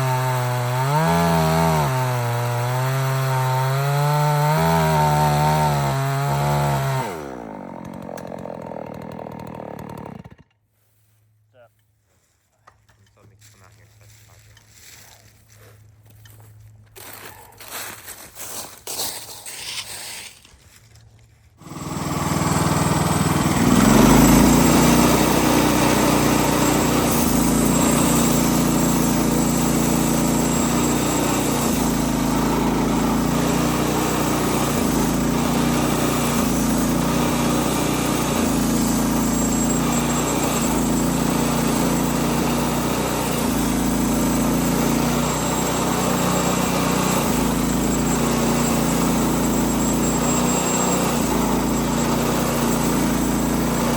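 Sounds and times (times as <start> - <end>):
small gasoline engine running: 0.0 - 10.5, 21.6 - 53.9.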